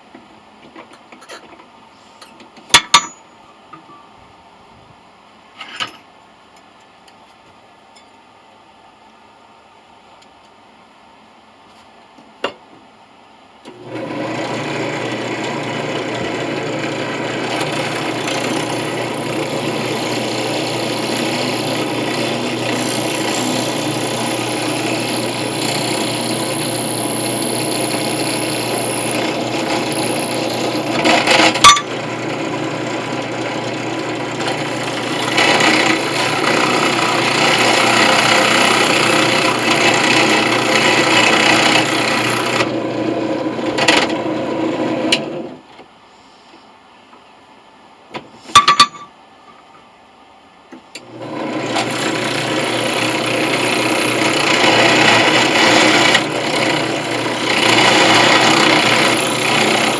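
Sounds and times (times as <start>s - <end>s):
electric drill grinding metal: 13.8s - 44.6s, 51.2s - 59.9s.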